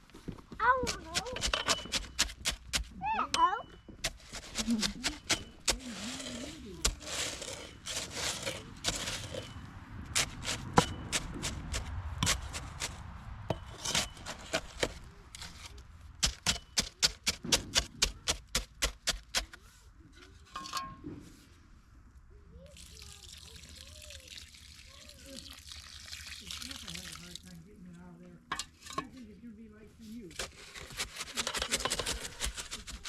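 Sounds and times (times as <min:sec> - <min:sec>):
shovel scraping wet concrete: 0:00.8 - 0:02.9, 0:04.0 - 0:19.6, 0:30.3 - 0:33.0.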